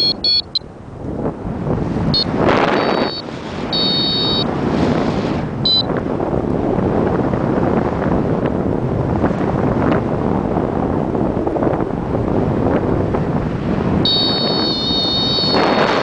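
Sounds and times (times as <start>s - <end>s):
high-pitched electronic tone: 0.0s - 0.6s, 2.2s - 4.4s, 14.1s - 15.8s
wind buffeting microphone: 0.0s - 16.0s.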